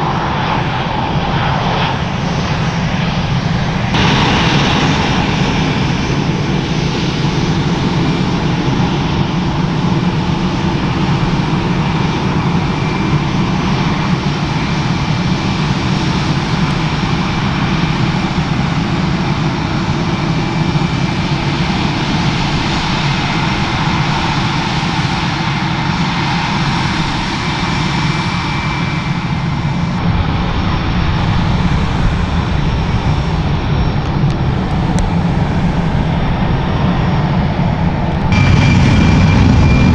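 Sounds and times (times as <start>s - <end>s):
jet engines running: 0.0s - 9.9s, 15.0s - 20.4s, 30.0s - 39.9s
faint engine whine: 30.0s - 39.9s.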